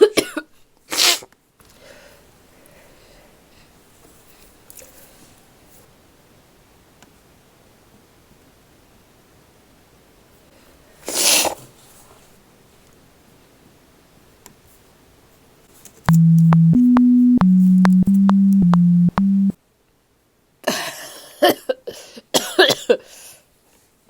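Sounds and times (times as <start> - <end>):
clicks: 16.1 - 19.6
low electronic tones: 16.1 - 19.6
person coughing: 22.4 - 23.0.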